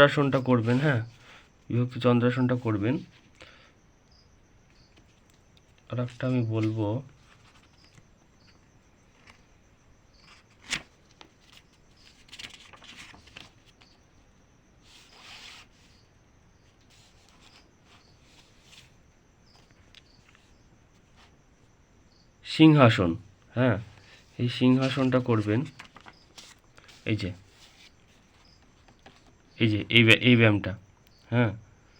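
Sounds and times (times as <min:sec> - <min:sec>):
faint rustling: 0:04.6 - 0:14.2, 0:14.8 - 0:21.8, 0:23.8 - 0:29.6.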